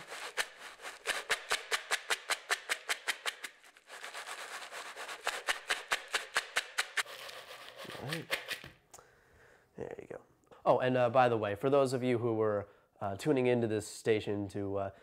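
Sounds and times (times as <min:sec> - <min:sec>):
candy and cereal rattling: 0:00.1 - 0:08.4.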